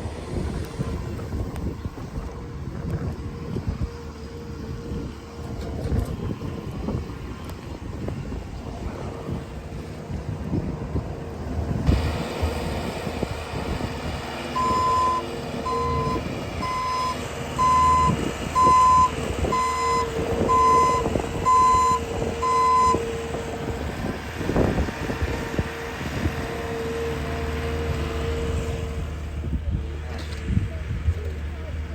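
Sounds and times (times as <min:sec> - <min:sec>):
vehicle engine running: 0:00.0 - 0:31.9
reversing alarm beeping: 0:14.6 - 0:23.1.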